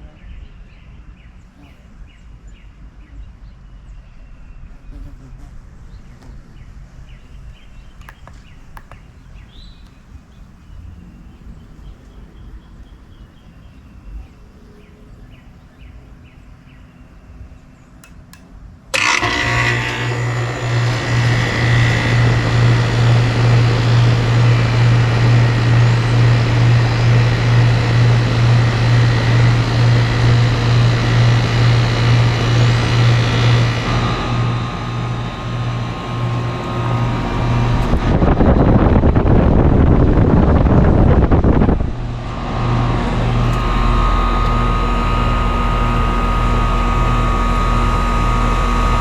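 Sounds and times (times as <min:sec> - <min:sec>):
air conditioner compressor humming: 0:04.8 - 0:49.0
loud rushing noise: 0:20.8 - 0:46.3.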